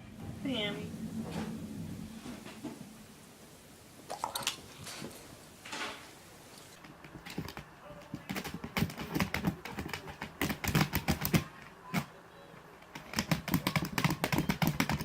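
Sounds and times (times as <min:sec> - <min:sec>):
sharp clicks and taps: 0:06.8 - 0:12.1, 0:12.8 - 0:15.0.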